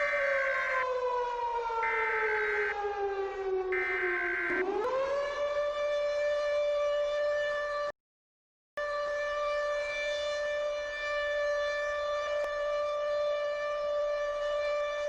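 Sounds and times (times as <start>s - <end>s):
pulsing higher alarm tone: 0.0s - 1.0s, 1.8s - 3.0s, 3.7s - 4.8s
civil defense siren wailing: 0.0s - 7.9s, 8.8s - 15.0s.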